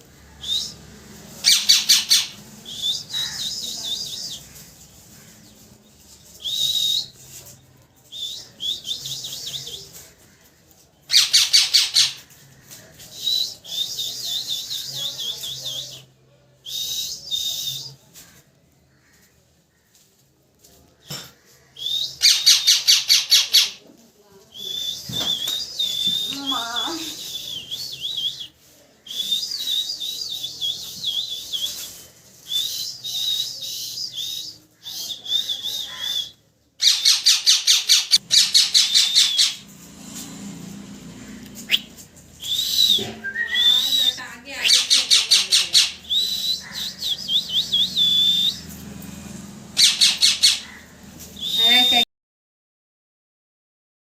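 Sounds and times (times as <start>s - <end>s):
parrot chirping and warbling: 1.3s - 3.7s, 11.1s - 12.3s, 22.2s - 23.8s, 36.8s - 39.8s, 42.7s - 48.7s, 49.8s - 52.0s.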